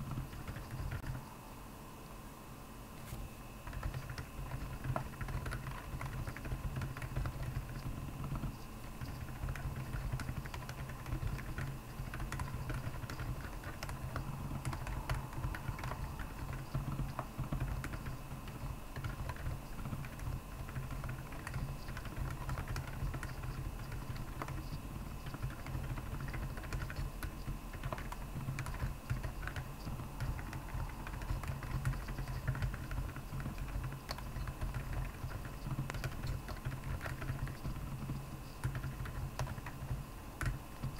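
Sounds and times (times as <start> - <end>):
mechanical keyboard typing: 0.0 - 1.2, 3.6 - 40.9
steady low hum: 0.0 - 40.9.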